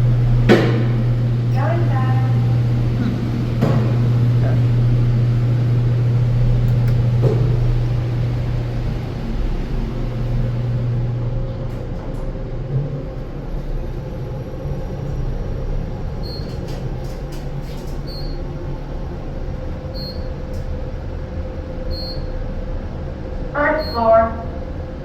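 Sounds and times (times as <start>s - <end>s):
elevator rushing ride noise: 0.0s - 25.0s
low hum: 0.0s - 25.0s.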